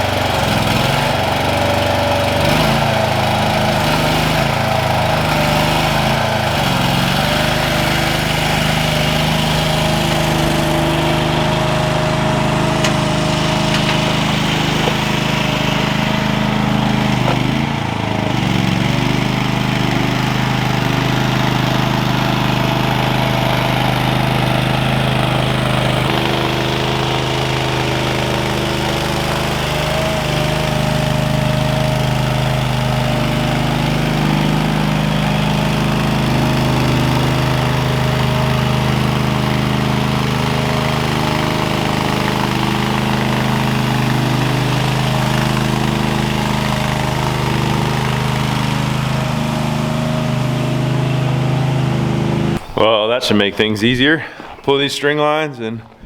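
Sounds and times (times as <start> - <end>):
small gas engine running: 0.0 - 53.6.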